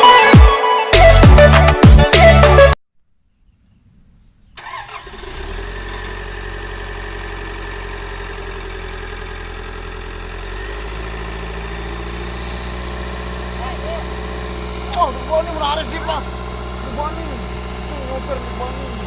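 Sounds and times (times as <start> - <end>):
background music: 0.0 - 2.8
excavator diesel engine running: 4.7 - 19.0.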